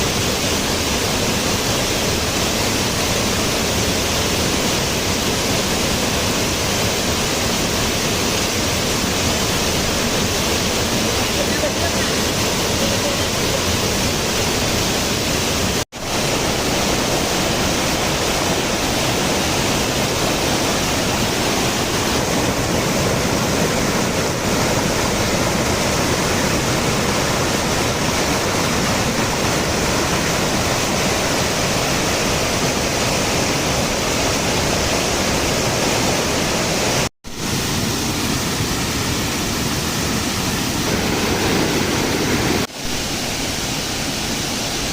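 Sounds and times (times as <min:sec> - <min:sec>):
waterfall rushing: 0:00.0 - 0:44.9.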